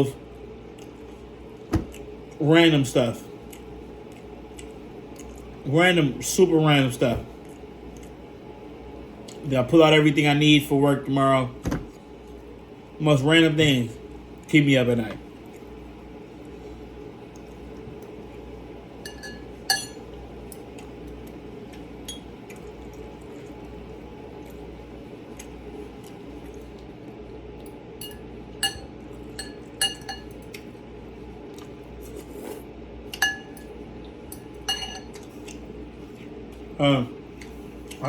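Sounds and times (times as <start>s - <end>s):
low room hum: 0.0s - 38.0s
utensil clinking against bowl: 19.0s - 20.0s, 28.0s - 30.5s, 33.1s - 33.7s, 34.6s - 35.2s.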